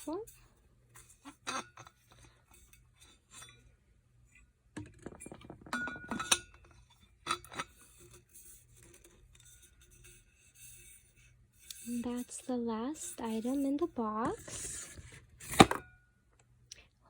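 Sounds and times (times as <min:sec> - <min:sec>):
metal water bottle clinking: 0:04.8 - 0:07.7.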